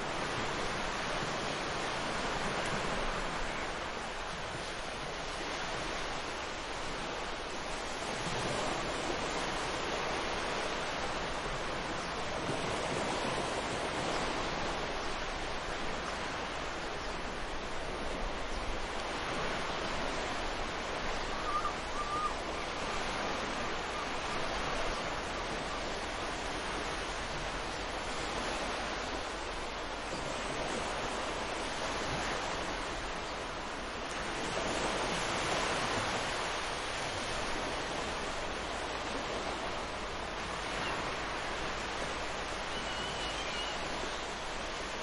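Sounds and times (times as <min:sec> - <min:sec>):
ocean surf washing: 0:00.0 - 0:45.0
bird call: 0:21.3 - 0:22.4, 0:42.7 - 0:44.0.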